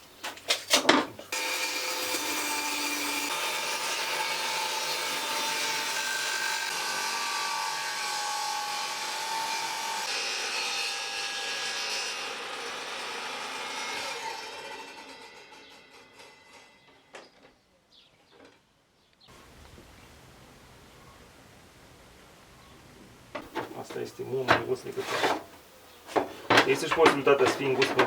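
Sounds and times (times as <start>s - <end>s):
table saw cutting wood: 1.3s - 17.0s, 23.4s - 28.0s.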